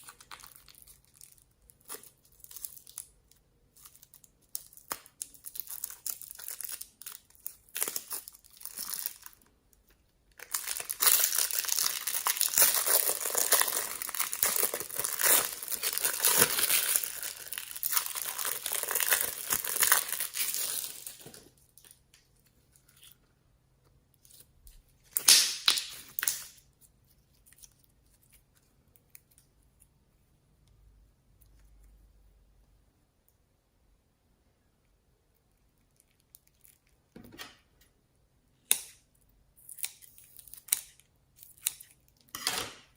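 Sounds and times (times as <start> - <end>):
dry crinkling and tearing: 10.4 - 22.0.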